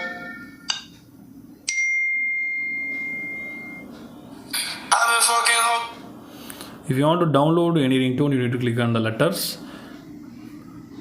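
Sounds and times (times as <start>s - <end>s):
high bell-like ding: 1.7s - 3.8s.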